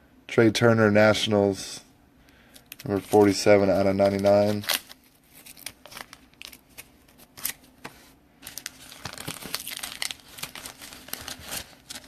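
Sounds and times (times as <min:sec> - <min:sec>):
plastic crinkling and rustling: 0:02.6 - 0:12.0.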